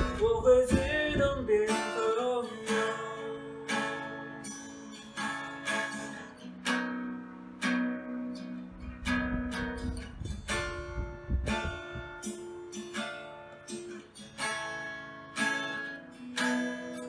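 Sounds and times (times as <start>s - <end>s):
fan noise rumbling on microphone: 0.0s - 1.7s, 8.6s - 12.2s
acoustic guitar chords ringing: 0.0s - 17.0s.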